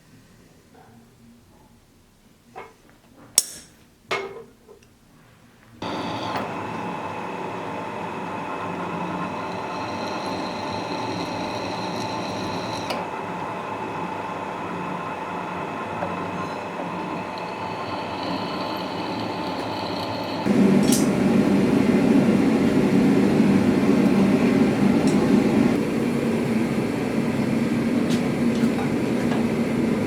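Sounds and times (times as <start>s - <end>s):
workshop machine whining: 5.8s - 30.0s.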